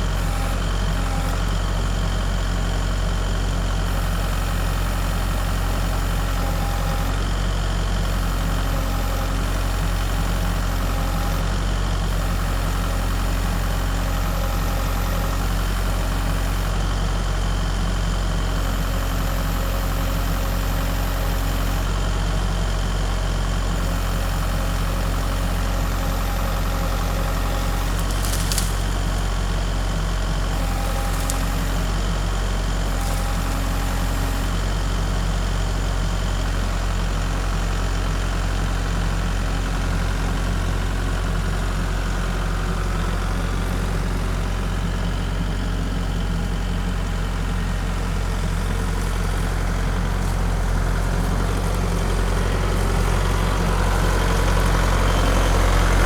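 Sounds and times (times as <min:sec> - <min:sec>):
engine humming steadily: 0:00.0 - 0:56.0.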